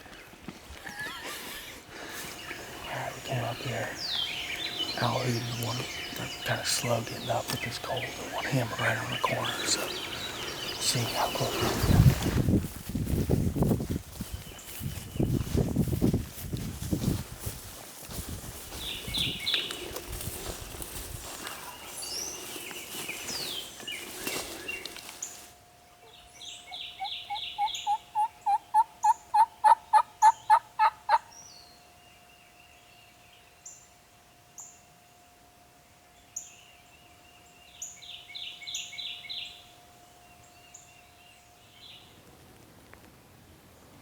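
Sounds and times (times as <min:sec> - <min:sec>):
songbirds chirping and singing: 0:01.9 - 0:12.5, 0:18.1 - 0:25.4, 0:26.0 - 0:31.7
rustling footsteps: 0:01.9 - 0:25.6
turkey yelping: 0:26.7 - 0:31.3.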